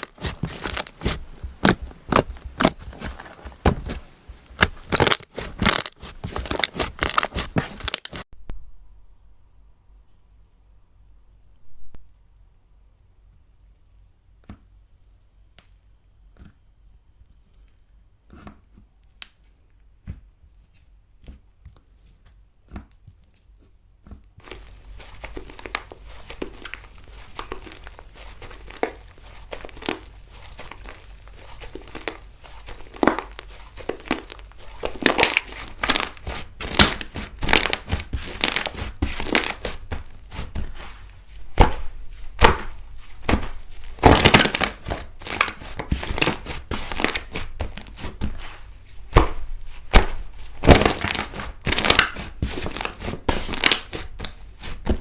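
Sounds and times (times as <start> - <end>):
slime crackling: 0.0 - 8.3, 24.4 - 55.0.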